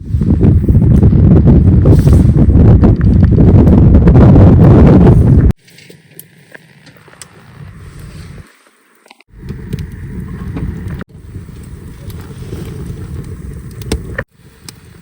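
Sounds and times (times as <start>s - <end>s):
wind buffeting microphone: 0.0s - 5.6s, 9.3s - 15.0s.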